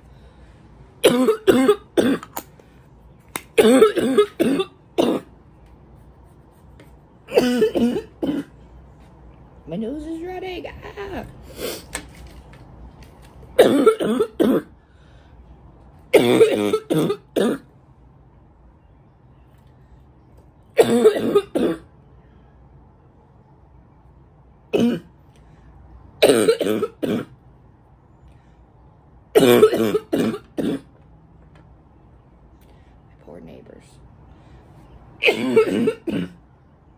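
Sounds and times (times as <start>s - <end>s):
woman coughing: 1.0s - 2.3s, 3.6s - 5.3s, 7.3s - 8.5s, 13.6s - 14.7s, 16.1s - 17.6s, 20.8s - 21.9s, 26.2s - 27.3s, 29.4s - 30.9s, 35.2s - 36.4s.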